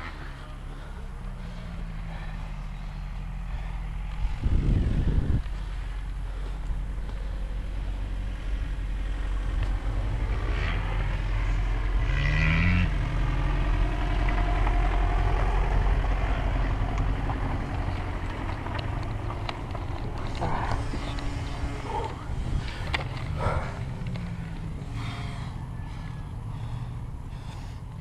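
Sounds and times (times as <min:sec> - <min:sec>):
motocross bike engine revving: 0:06.3 - 0:27.6.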